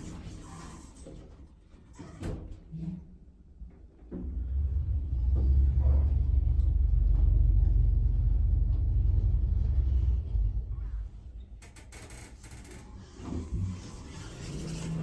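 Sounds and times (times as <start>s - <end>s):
lift car rumbling: 4.4s - 11.6s.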